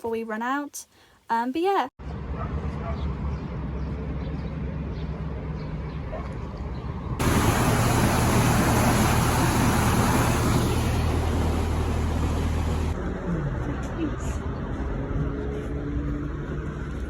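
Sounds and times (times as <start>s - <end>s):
boat engine humming: 3.6s - 13.1s
loud steady hiss: 7.2s - 13.0s.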